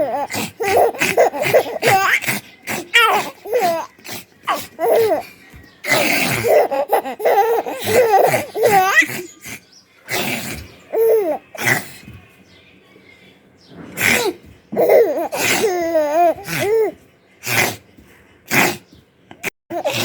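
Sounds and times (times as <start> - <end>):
baby laughing and squealing: 0.0 - 5.3, 5.9 - 9.5, 14.2 - 17.0.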